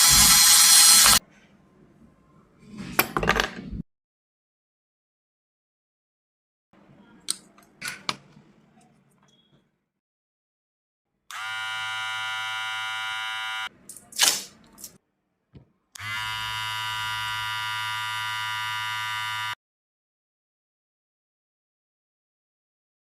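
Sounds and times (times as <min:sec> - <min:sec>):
hair clipper buzzing: 0:00.0 - 0:01.2, 0:11.3 - 0:13.7, 0:16.0 - 0:19.6.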